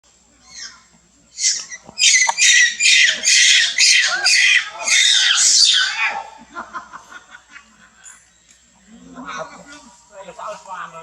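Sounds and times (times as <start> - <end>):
monkey screaming: 0.4 - 0.8, 1.4 - 6.5.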